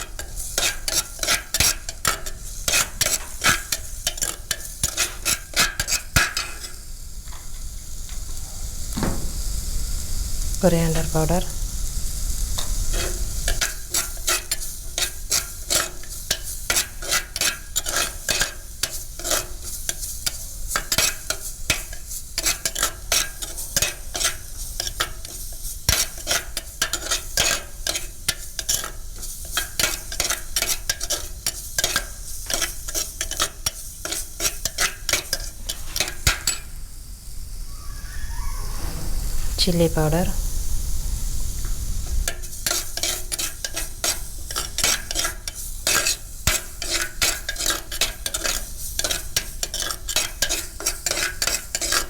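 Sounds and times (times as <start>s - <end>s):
spatula scraping a pan: 0.0s - 6.9s, 12.1s - 36.7s, 42.3s - 52.0s
sizzle of frying in oil: 0.0s - 37.7s, 39.6s - 52.0s.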